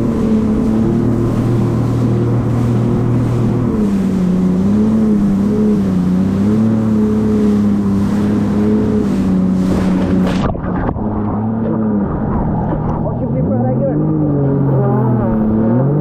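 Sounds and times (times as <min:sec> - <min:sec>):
wind and water hiss: 0:00.0 - 0:10.5
jet ski engine running: 0:00.0 - 0:16.0.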